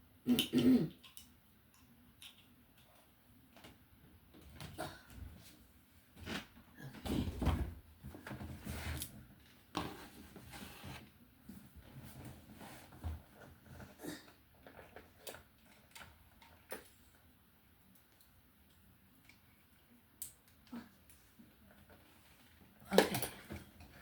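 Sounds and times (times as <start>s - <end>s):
rustling of handled things: 2.1s - 17.4s.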